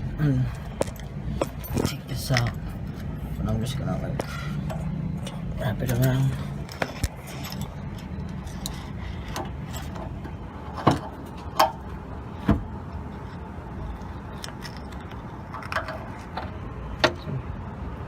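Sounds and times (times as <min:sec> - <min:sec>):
steady low hum: 0:00.0 - 0:18.0
metal clicks and knocks: 0:14.4 - 0:17.3.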